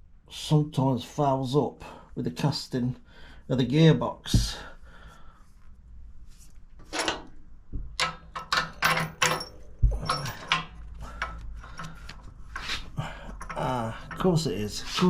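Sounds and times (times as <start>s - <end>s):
metal bolt clinking and knocking: 6.8s - 12.0s, 13.3s - 15.0s.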